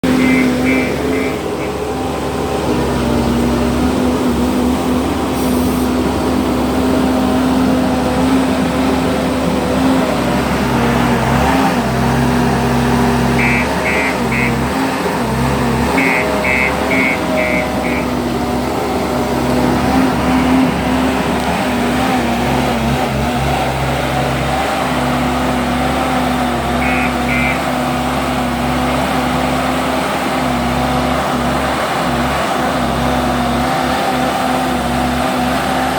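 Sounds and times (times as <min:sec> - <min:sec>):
diesel engine running: 0:00.0 - 0:35.9
reversing alarm beeps: 0:00.2 - 0:01.7, 0:13.4 - 0:14.6, 0:16.0 - 0:18.1, 0:26.8 - 0:27.7.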